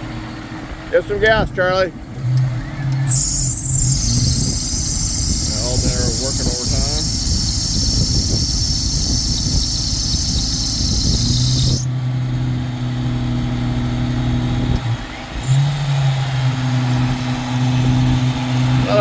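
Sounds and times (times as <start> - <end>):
electric winch motor humming: 3.1 - 11.8
wind rumbling on microphone: 3.1 - 11.9
steady high hiss: 3.2 - 11.8.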